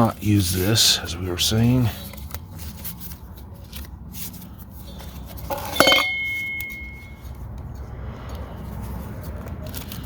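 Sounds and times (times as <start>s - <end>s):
sharp metallic clink: 5.5s - 7.2s.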